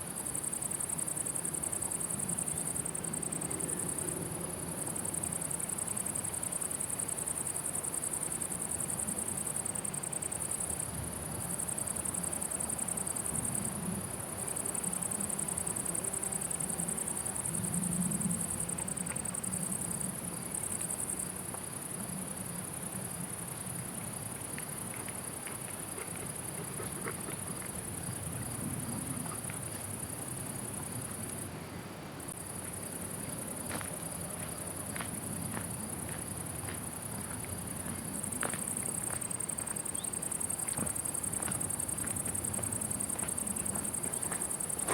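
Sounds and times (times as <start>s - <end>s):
crickets chirring: 0.0s - 31.5s, 32.2s - 44.9s.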